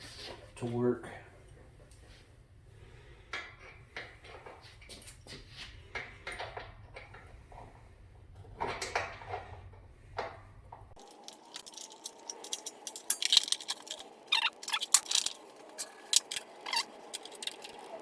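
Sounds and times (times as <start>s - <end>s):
metallic clicks of hand tools: 11.0s - 17.9s.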